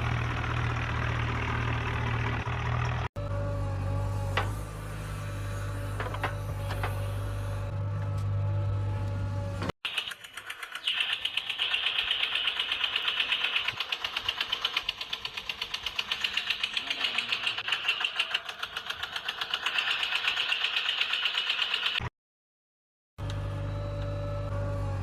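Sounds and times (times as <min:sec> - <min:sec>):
small electric motor ticking: 0:09.9 - 0:22.1.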